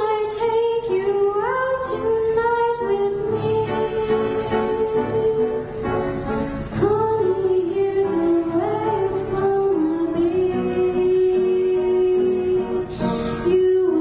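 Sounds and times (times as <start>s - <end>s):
girl singing: 0.0s - 5.8s, 6.7s - 14.0s
instrumental accompaniment: 0.0s - 14.0s.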